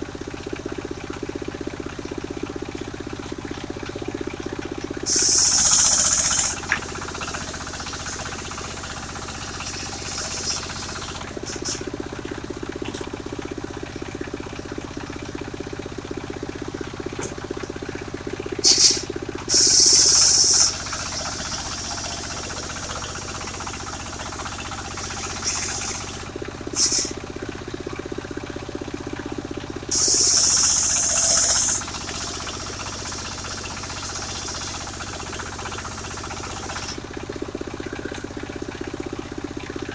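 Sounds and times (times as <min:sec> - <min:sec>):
sawmill engine running: 0:00.0 - 0:39.9
hissing bursts: 0:05.1 - 0:11.8, 0:18.6 - 0:27.2, 0:29.9 - 0:37.0.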